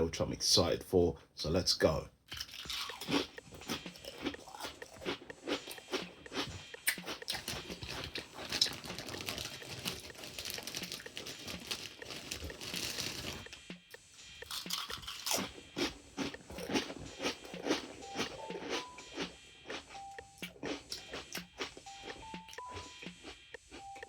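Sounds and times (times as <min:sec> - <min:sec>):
person crunching crisps: 0:02.3 - 0:13.5, 0:14.4 - 0:22.2.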